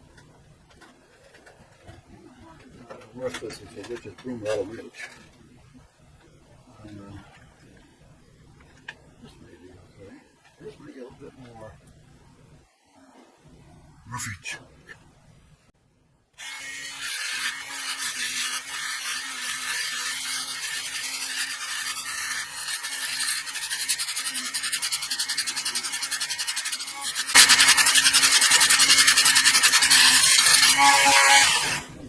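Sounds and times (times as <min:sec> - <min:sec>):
rotary tool grinding: 0:16.4 - 0:32.0.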